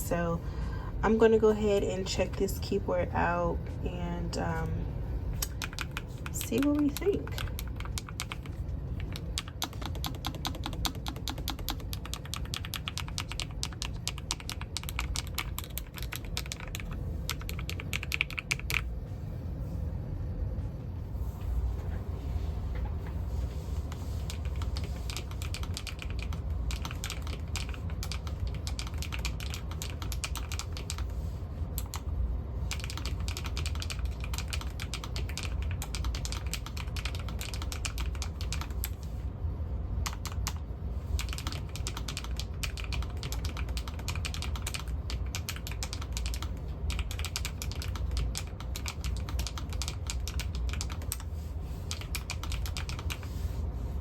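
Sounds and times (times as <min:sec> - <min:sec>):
steady low hum: 0:00.0 - 0:54.0
mechanical keyboard typing: 0:05.4 - 0:18.9, 0:24.2 - 0:31.2, 0:31.8 - 0:32.1, 0:32.7 - 0:39.0, 0:40.0 - 0:40.6, 0:41.2 - 0:51.3, 0:51.9 - 0:53.3.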